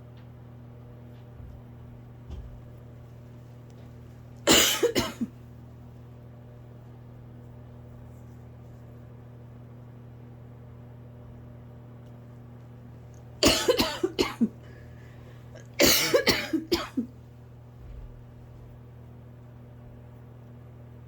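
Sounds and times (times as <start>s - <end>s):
steady low hum: 0.0s - 21.0s
person coughing: 4.5s - 5.4s, 13.4s - 14.7s, 15.6s - 17.1s.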